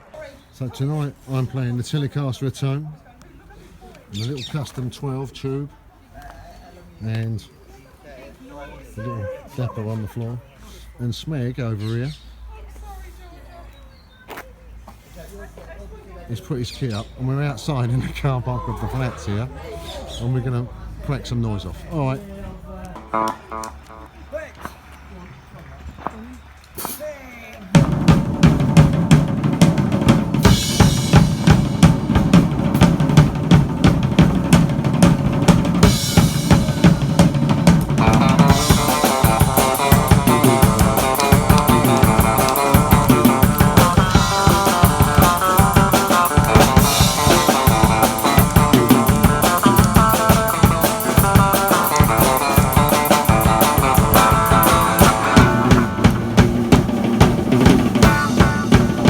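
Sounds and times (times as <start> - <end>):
drum kit: 27.8 - 59.0
electric guitar: 30.4 - 59.0.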